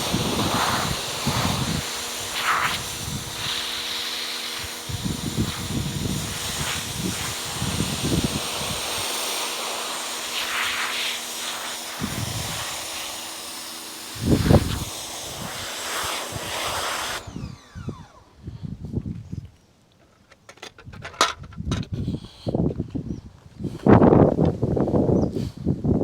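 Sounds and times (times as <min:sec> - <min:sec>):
water spray hissing: 0:00.0 - 0:17.2.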